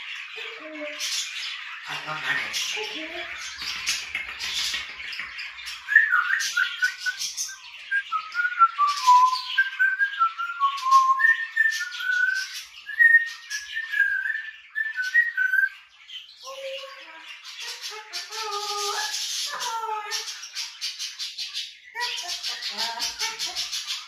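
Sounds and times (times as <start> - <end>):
budgerigars chirping and chattering: 0.0 - 24.0
parrot whistling a tune: 5.9 - 15.8.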